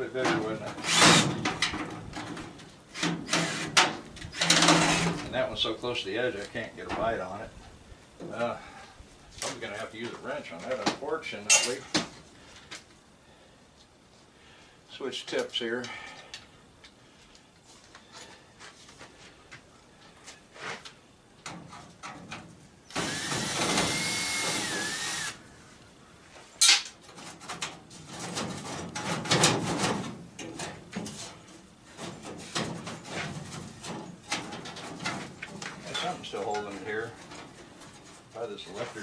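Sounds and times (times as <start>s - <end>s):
power drill running: 0.8s - 1.3s, 22.9s - 25.4s.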